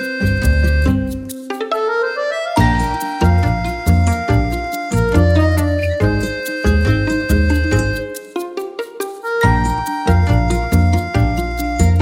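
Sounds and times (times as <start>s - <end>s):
upbeat music with bass line: 0.0s - 12.0s.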